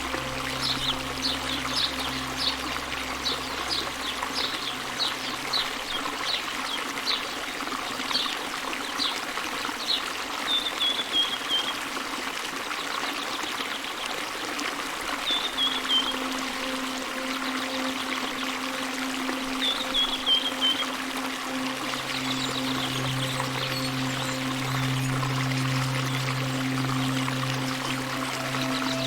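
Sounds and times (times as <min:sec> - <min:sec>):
low steady hum: 0:00.0 - 0:06.2
stream water running: 0:00.0 - 0:29.0.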